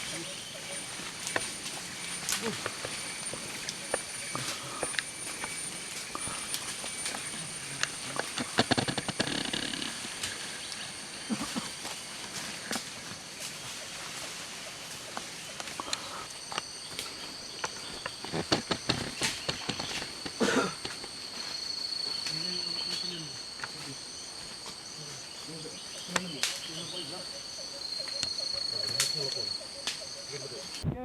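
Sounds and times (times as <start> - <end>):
insects droning: 0.0 - 31.0
footsteps on footpath: 17.6 - 21.5.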